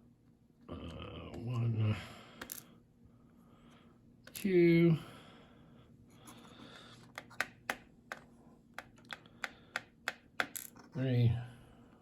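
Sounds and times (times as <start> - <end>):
small metal lock parts clicking: 8.8 - 10.9.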